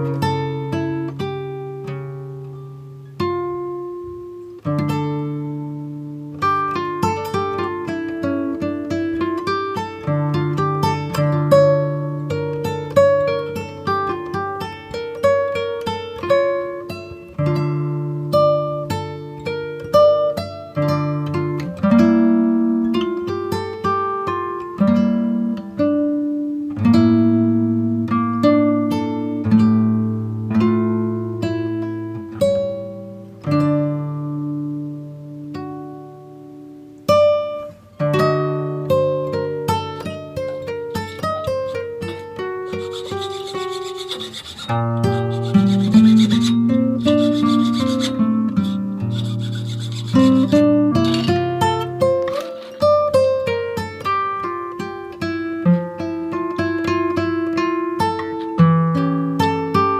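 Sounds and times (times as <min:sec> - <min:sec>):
plucked guitar notes and chords: 0:00.0 - 0:20.0
acoustic guitar music: 0:00.0 - 0:59.9.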